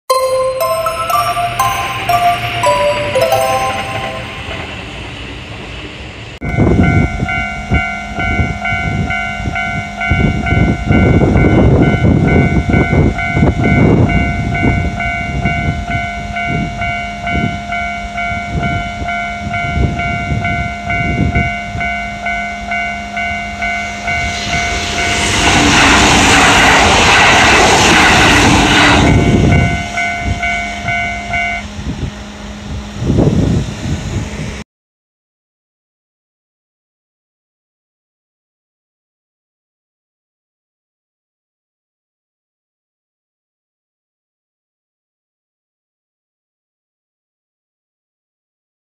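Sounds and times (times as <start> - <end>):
train rushing past: 0.1 - 7.4, 22.7 - 34.6
railroad crossing warning bell: 0.1 - 33.0.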